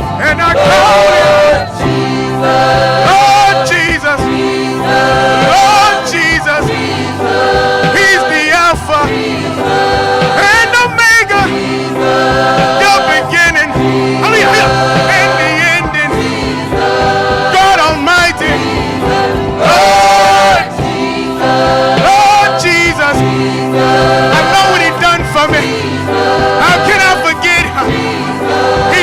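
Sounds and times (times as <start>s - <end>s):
gospel choir singing: 0.0s - 29.0s
lead voice with vibrato: 0.0s - 29.0s.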